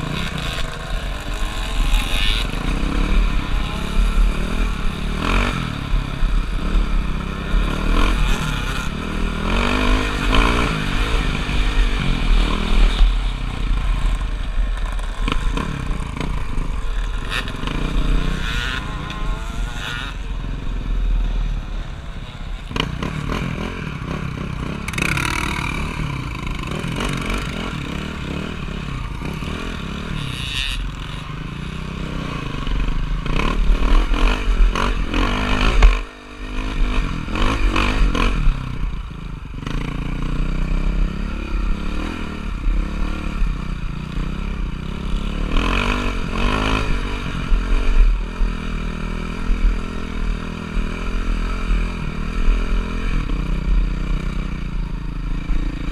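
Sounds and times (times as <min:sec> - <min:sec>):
motocross bike engine revving: 0:00.0 - 0:55.9.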